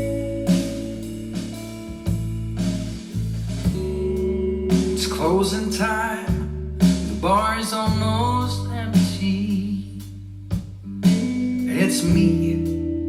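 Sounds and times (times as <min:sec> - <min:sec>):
song with guitar and bass: 0:00.0 - 0:13.0
person singing: 0:04.9 - 0:10.0, 0:11.0 - 0:13.0.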